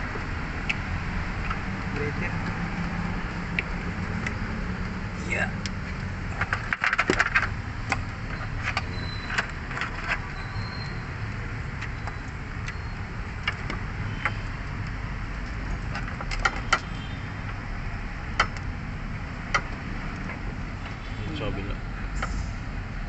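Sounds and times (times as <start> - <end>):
clicks and knocks of parts handled: 5.6 - 10.3, 13.4 - 17.6.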